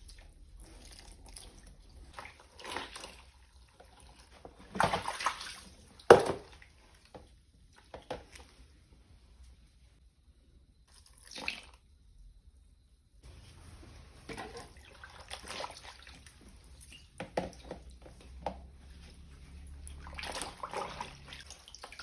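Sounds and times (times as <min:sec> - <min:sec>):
water sloshing and splashing: 0:00.0 - 0:08.5, 0:13.3 - 0:22.0.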